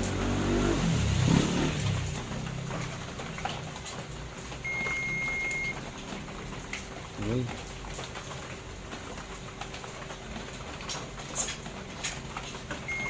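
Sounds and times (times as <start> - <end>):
multimeter continuity beep: 4.6 - 5.8.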